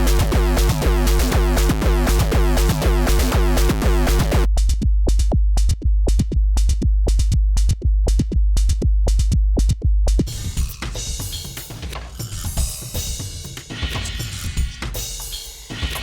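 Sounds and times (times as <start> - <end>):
synth chords: 0.0 - 4.5
deep bass: 0.0 - 10.8
bit-crushed drum-machine loop: 0.0 - 16.0.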